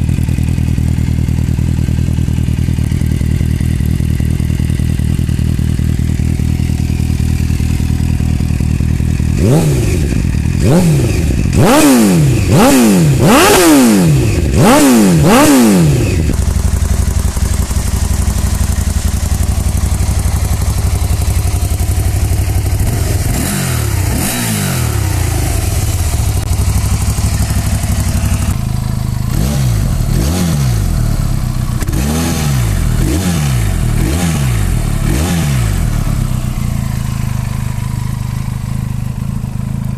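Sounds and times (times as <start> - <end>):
motorcycle engine idling and revving: 0.0 - 39.9.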